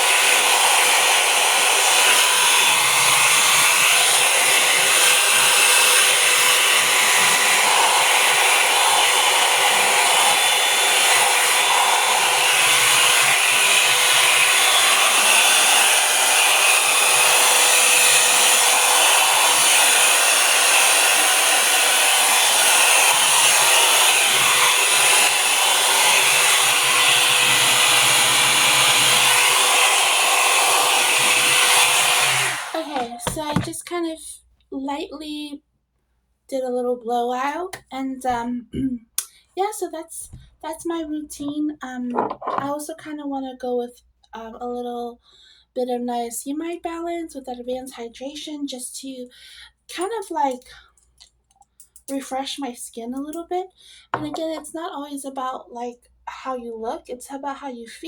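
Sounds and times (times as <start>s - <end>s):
blow-dryer brush running: 0.0s - 33.8s.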